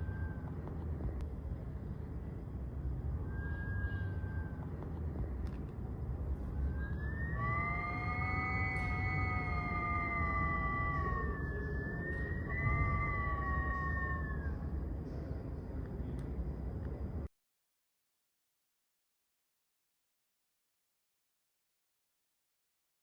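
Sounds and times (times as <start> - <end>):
low wind rumble: 0.0 - 17.3.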